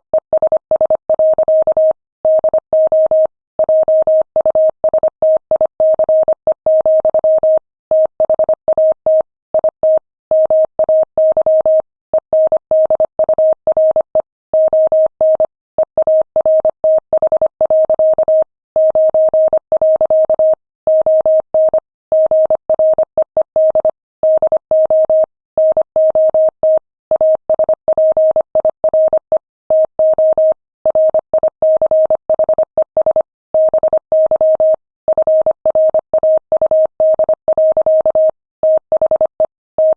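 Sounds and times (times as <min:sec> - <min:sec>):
morse code tone: 0:27.1 - 0:39.9.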